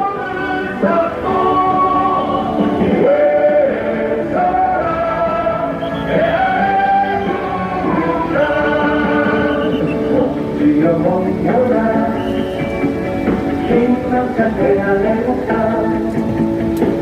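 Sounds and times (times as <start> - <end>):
choir singing slow held notes: 0.0 - 12.5.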